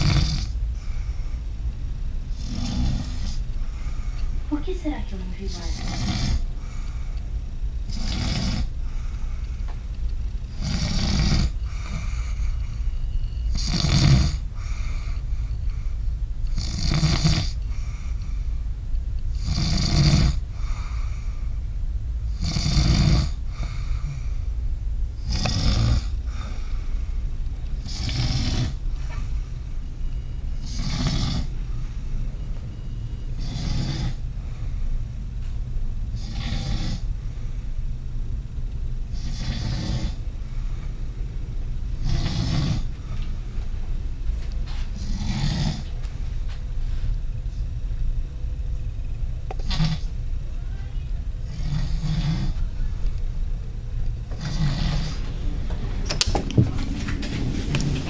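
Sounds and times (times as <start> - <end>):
person snoring: 0.0 - 0.6, 2.3 - 3.4, 5.5 - 6.7, 7.9 - 8.8, 10.5 - 12.4, 13.5 - 15.2, 16.5 - 18.2, 19.3 - 21.4, 22.3 - 24.4, 25.2 - 26.7, 27.8 - 28.8, 30.6 - 31.6, 33.4 - 34.2, 36.2 - 37.1, 39.1 - 40.2, 42.0 - 42.9, 45.0 - 45.9, 49.6 - 50.1, 51.4 - 52.6, 54.3 - 55.3
low hum: 0.0 - 13.6, 14.4 - 16.6, 17.6 - 19.4, 20.4 - 22.4, 23.3 - 28.0, 28.6 - 30.8, 31.4 - 33.4, 34.1 - 36.2, 37.0 - 39.2, 40.1 - 58.0.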